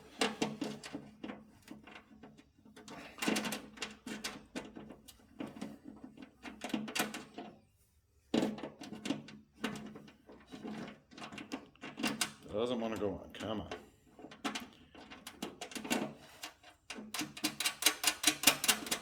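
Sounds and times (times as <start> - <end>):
small metal parts clicking and rattling: 14.3 - 19.0.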